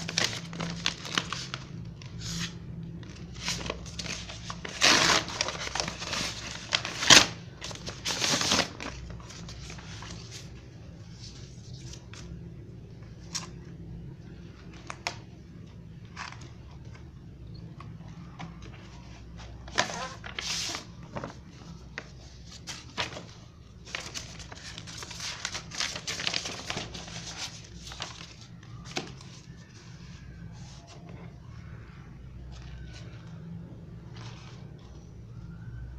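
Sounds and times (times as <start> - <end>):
packaging crinkling: 0.0 - 10.4, 22.0 - 29.6.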